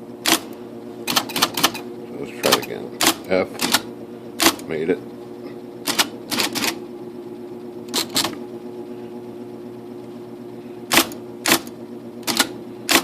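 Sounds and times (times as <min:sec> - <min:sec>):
typewriter motor humming: 0:00.2 - 0:05.0, 0:05.8 - 0:06.8, 0:07.8 - 0:08.4, 0:10.9 - 0:13.0
typewriter mechanism clacking: 0:01.1 - 0:01.8, 0:02.4 - 0:03.8, 0:04.4 - 0:04.6, 0:05.9 - 0:06.8, 0:07.9 - 0:08.4, 0:10.9 - 0:13.0.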